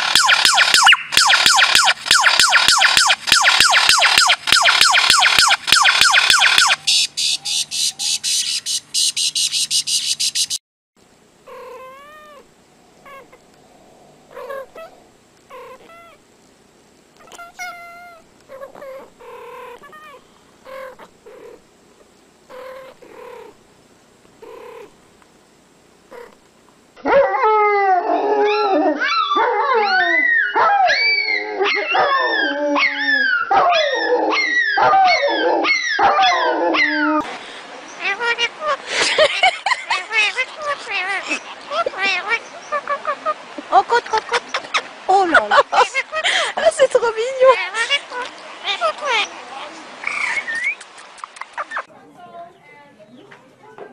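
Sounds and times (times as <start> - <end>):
small animals high gliding calls: 0.0 - 10.6, 11.5 - 16.2, 37.9 - 44.9.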